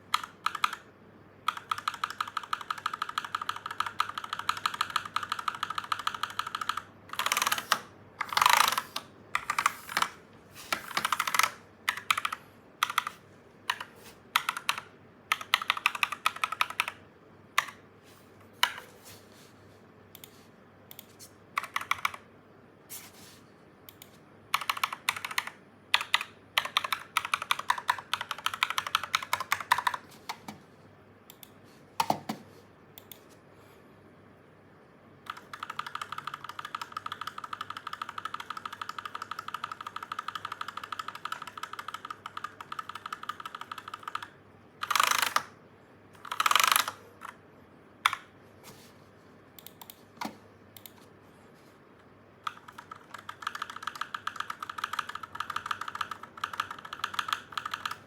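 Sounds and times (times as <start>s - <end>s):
mechanical keyboard typing: 0.0s - 17.0s, 17.6s - 17.8s, 18.6s - 18.9s, 20.9s - 22.3s, 23.9s - 30.6s, 35.2s - 45.6s, 46.2s - 47.4s, 48.0s - 48.3s, 52.4s - 58.0s.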